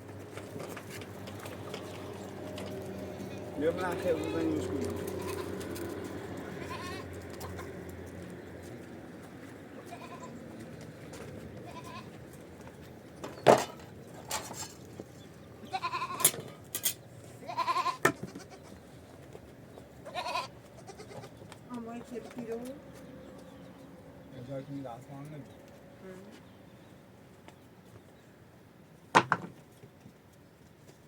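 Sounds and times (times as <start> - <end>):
goats bleating: 2.9 - 5.7, 6.4 - 7.8, 9.8 - 10.4, 11.6 - 12.2, 15.6 - 16.3, 17.4 - 18.8, 20.0 - 21.3.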